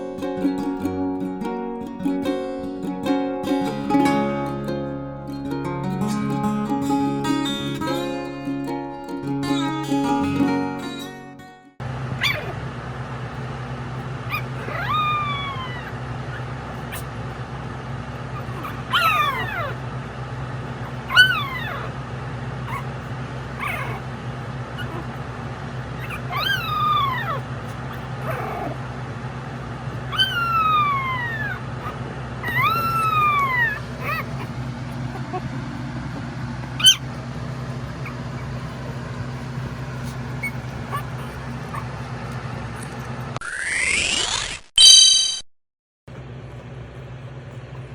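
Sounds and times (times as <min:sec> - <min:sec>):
steady low hum: 0:11.8 - 0:43.4
puppies whining: 0:12.2 - 0:12.6, 0:13.4 - 0:22.0, 0:22.6 - 0:45.4.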